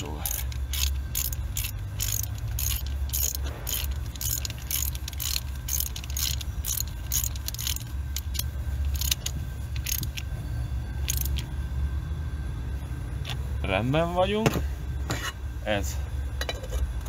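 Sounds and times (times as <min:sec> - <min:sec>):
ratchet wrench clicking: 0:00.0 - 0:10.3, 0:11.0 - 0:11.5
steady low hum: 0:00.0 - 0:17.0.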